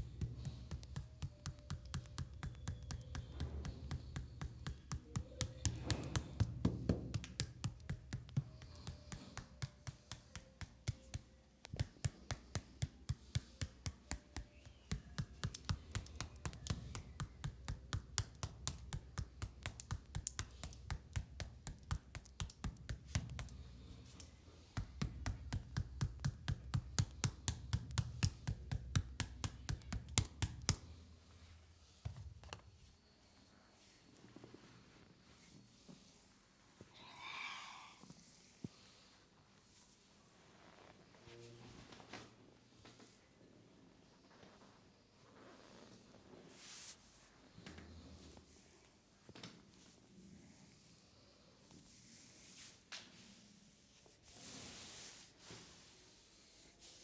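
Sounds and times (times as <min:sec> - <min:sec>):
soft background music: 0:00.0 - 0:26.8
hand tapping on skin: 0:00.0 - 0:31.0.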